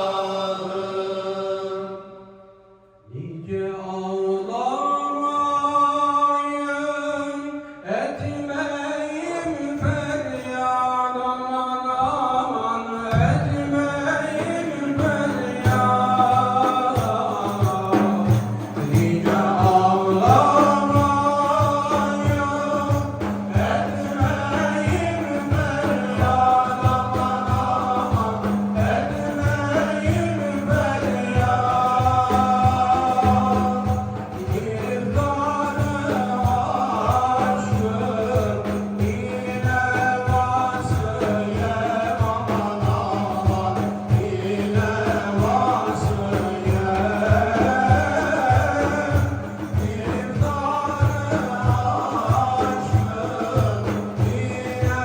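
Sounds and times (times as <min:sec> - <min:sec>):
devotional chant singing: 0:00.0 - 0:55.0.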